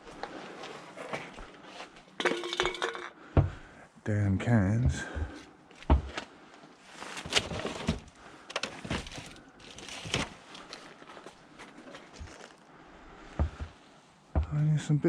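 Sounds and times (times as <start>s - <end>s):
rustling from handling: 6.0s - 12.6s.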